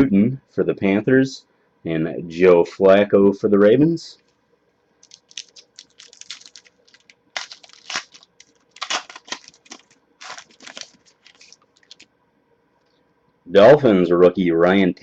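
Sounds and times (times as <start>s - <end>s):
card pack wrapper crinkling: 5.0s - 12.1s.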